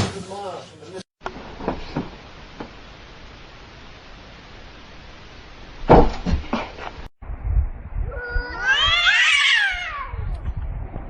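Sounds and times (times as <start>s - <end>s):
cat meowing: 8.1s - 10.3s.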